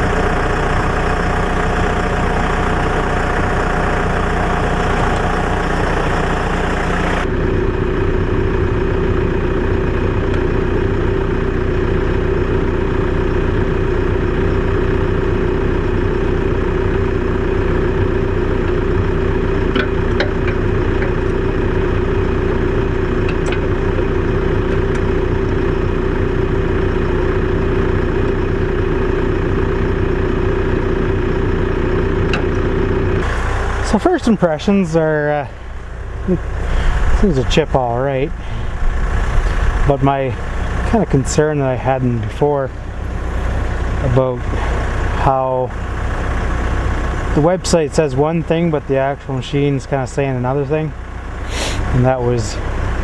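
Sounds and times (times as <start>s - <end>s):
wood chipper hiss: 0.0s - 7.3s, 33.2s - 42.3s, 51.4s - 52.7s
tractor engine running: 0.0s - 53.0s.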